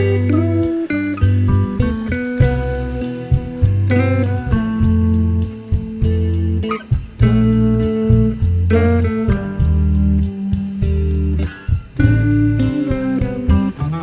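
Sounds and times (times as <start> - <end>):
bass line: 0.0 - 14.0
plucked guitar: 0.0 - 14.0.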